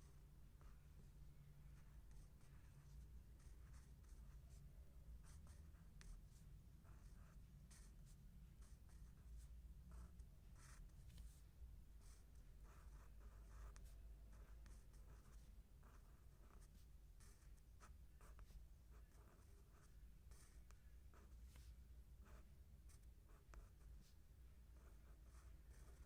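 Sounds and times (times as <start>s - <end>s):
pen scratching on paper: 0.0s - 4.6s, 5.2s - 11.4s, 12.0s - 24.2s, 24.8s - 26.0s.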